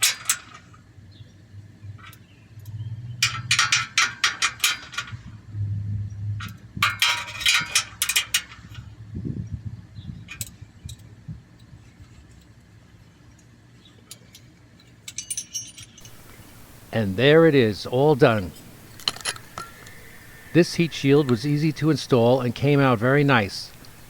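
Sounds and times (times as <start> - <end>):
low hum: 16.0 - 24.0
metal hand tools clicking: 18.4 - 22.4.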